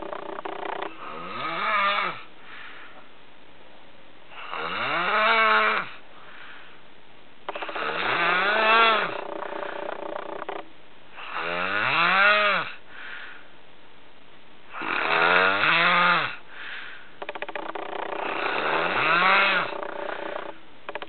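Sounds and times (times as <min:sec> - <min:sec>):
person snoring: 0:00.9 - 0:02.3, 0:07.5 - 0:10.1, 0:11.2 - 0:12.8.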